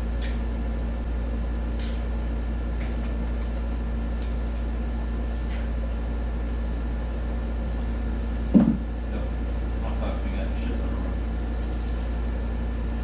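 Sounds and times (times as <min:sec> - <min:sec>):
low mechanical hum: 0:00.0 - 0:13.0
short thump: 0:08.5 - 0:08.9.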